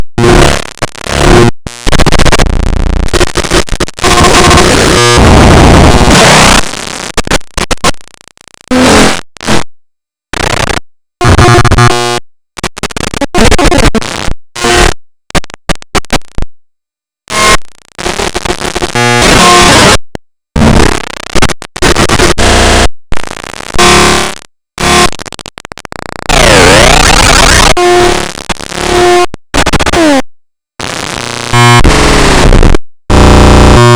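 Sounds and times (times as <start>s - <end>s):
heavily distorted clipped noise: 0.0s - 9.6s, 17.3s - 30.2s, 30.8s - 33.9s.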